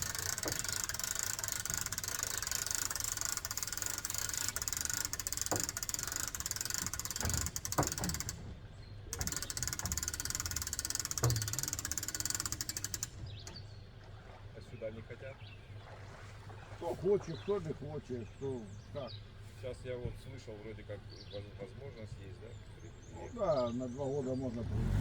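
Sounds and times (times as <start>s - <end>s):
fishing reel clicking: 0.0s - 8.4s, 9.1s - 13.2s.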